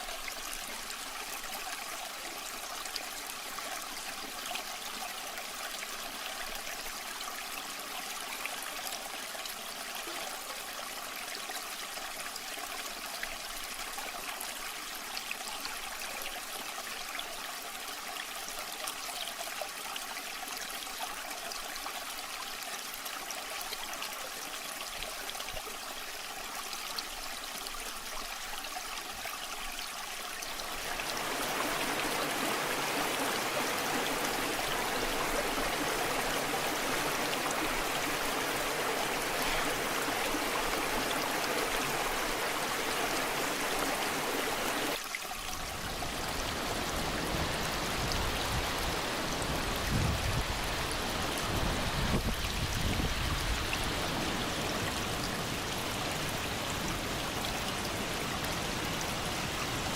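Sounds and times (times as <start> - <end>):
waterfall water rushing: 30.6 - 59.9.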